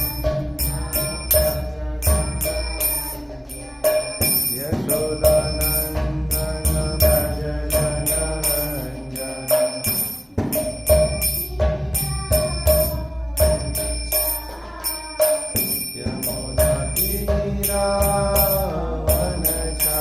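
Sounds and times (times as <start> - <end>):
hand cymbals struck: 0.0 - 20.0
held melody: 0.0 - 20.0.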